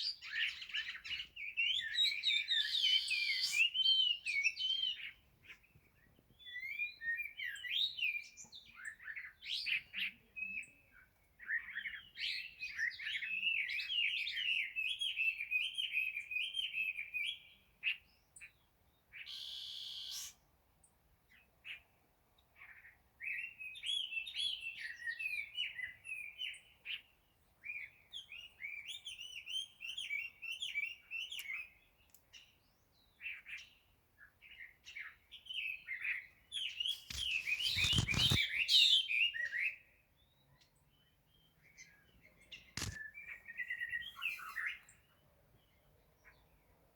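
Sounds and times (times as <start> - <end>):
cage birds twittering: 34.5 - 39.7, 41.0 - 46.5
noisy rustle: 36.8 - 38.8.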